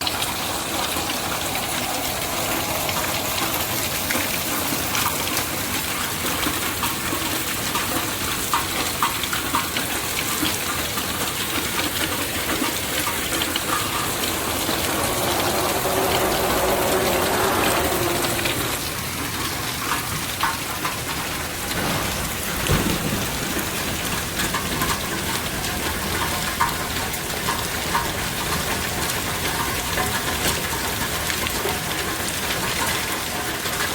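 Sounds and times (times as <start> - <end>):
raindrops pattering: 0.0 - 33.9
steady rain hissing: 0.0 - 33.9
loud swelling sound: 0.4 - 5.4, 12.3 - 19.9.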